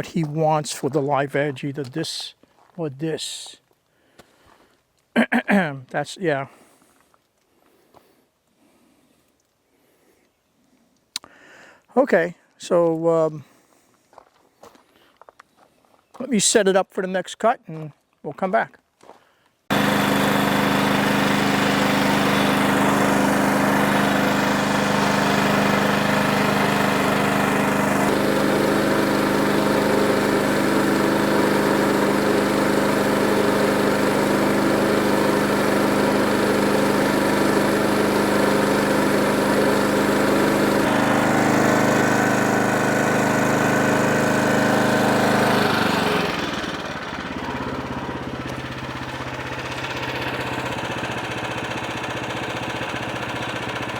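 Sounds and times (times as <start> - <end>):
sawmill cutting a log: 19.7 - 53.9.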